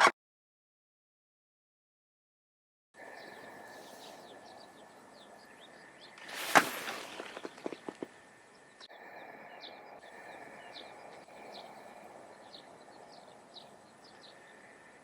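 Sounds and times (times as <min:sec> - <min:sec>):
faint outdoor hiss: 0:03.0 - 0:15.0
small birds chirping: 0:03.0 - 0:15.0.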